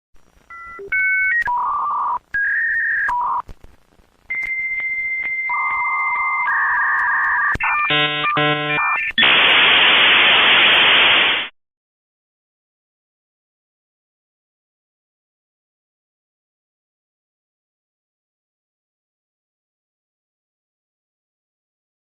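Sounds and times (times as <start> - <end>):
modem static hiss: 0.2 - 11.5
touch-tone dialing: 4.3 - 9.1.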